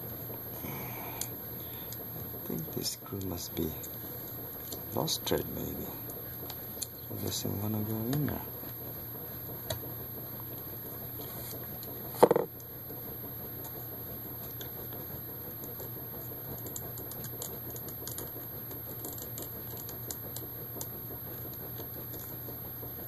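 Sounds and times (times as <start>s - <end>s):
steady background hum: 0.0s - 23.0s.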